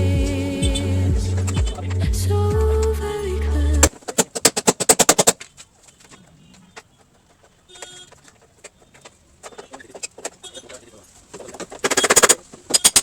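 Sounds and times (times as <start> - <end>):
background music: 0.0 - 3.9
rapid sharp knocks: 4.1 - 5.4.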